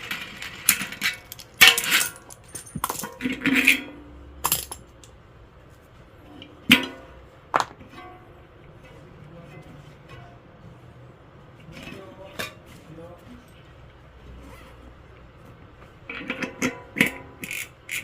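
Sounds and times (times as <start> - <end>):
metal tools clinking: 0.3 - 5.0.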